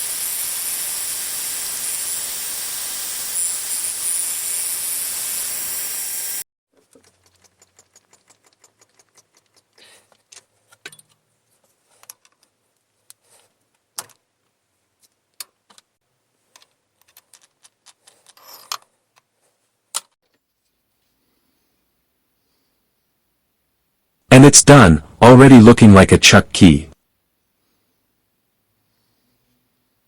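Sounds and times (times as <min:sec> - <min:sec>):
small metallic clicks and clinks: 0:16.6 - 0:19.3.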